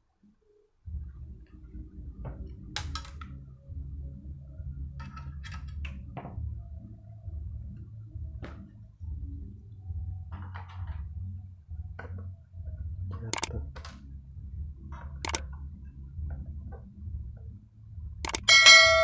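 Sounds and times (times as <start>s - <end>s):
steady low hum: 0.9s - 19.0s
plastic and metal parts clicking: 13.3s - 13.9s, 18.3s - 18.5s.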